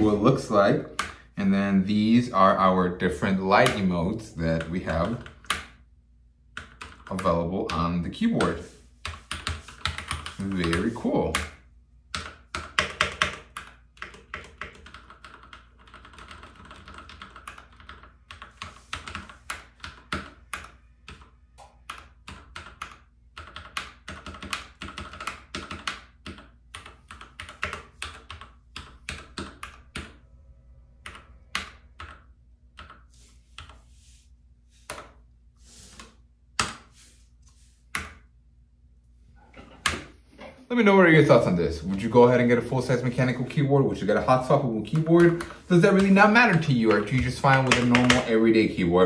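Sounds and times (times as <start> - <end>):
mechanical keyboard typing: 6.6 - 7.8, 8.4 - 30.2, 31.0 - 33.7, 44.8 - 48.3.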